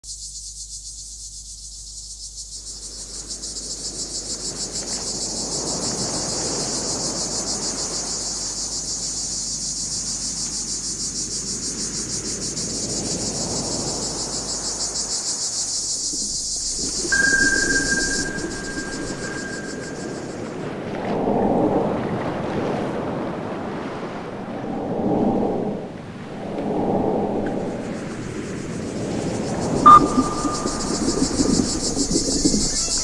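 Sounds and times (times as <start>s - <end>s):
crickets chirping: 0.0s - 33.0s
rushing noise: 16.8s - 20.4s, 29.8s - 32.4s
steady high tone: 17.1s - 20.4s, 29.8s - 31.8s.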